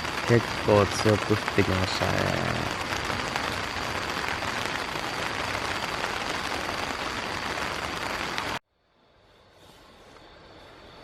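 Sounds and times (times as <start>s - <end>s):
heavy rain on tent fabric: 0.0s - 8.6s.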